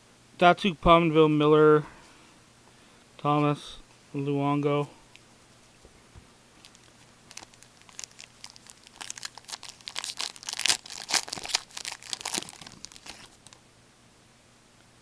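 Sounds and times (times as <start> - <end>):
wrapper tearing and crinkling: 6.6 - 13.6.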